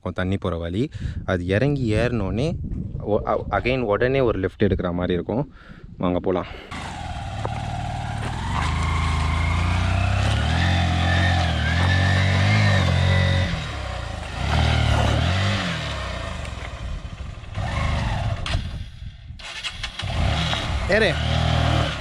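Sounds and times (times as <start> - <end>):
motorcycle engine revving: 6.6 - 22.0.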